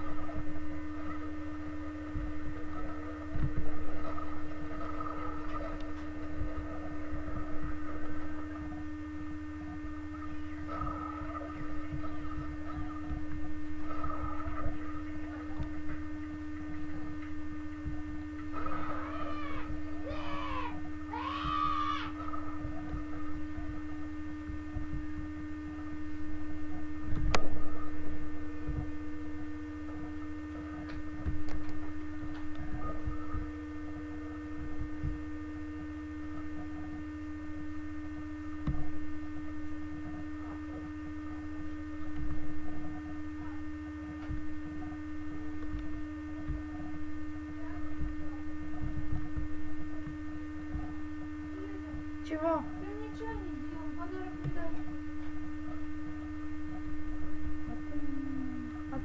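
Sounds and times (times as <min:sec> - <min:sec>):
electrical hum: 0:00.0 - 0:59.0.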